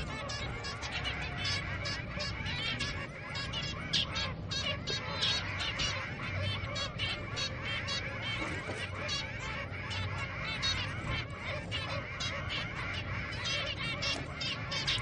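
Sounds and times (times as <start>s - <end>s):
finch chicks begging calls: 0.0s - 15.0s.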